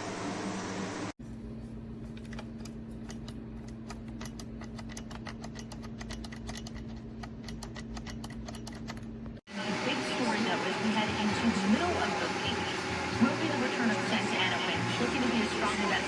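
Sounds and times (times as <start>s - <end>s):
computer keyboard typing: 2.3s - 9.1s.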